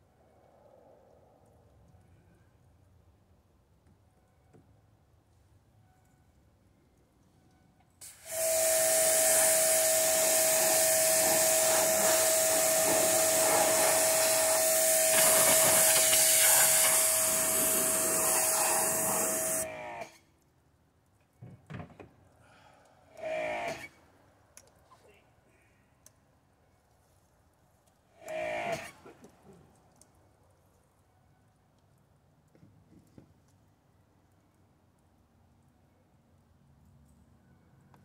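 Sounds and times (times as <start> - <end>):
electric fan motor whine: 8.1 - 20.0
fan spinning down: 8.2 - 20.1.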